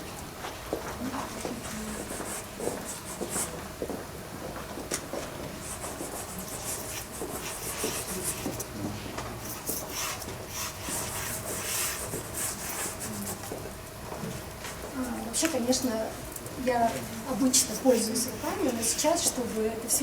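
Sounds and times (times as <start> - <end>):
pastel scratching on paper: 5.6 - 8.7, 9.5 - 13.5, 17.5 - 19.6.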